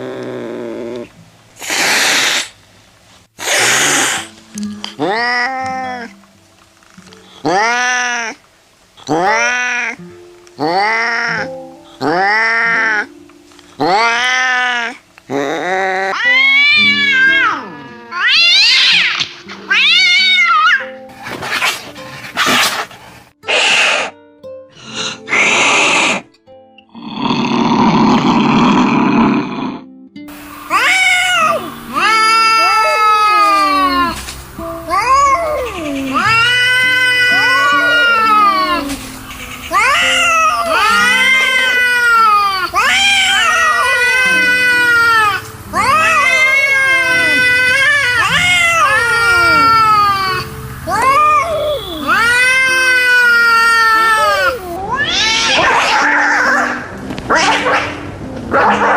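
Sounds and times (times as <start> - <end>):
cat hissing: 0.0 - 2.6, 3.4 - 4.4, 13.8 - 24.2, 24.8 - 26.3, 30.7 - 51.3, 52.0 - 58.0
cats yowling: 5.0 - 6.2, 7.4 - 8.4, 9.0 - 10.0, 10.6 - 13.1, 13.8 - 21.0, 25.2 - 26.3, 30.7 - 58.9.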